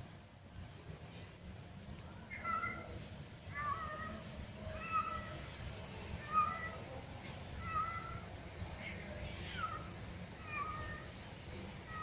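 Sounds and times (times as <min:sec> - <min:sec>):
cat meowing: 0:02.3 - 0:05.5, 0:06.2 - 0:07.0, 0:07.6 - 0:11.2.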